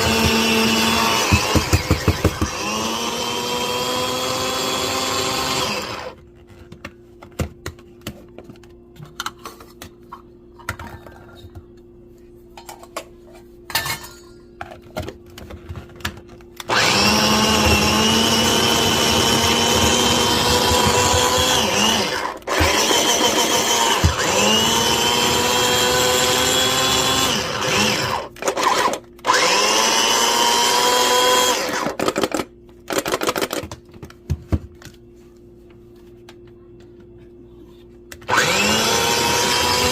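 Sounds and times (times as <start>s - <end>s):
food chopper motor whining: 0.0s - 6.2s, 16.6s - 32.4s, 38.2s - 39.9s.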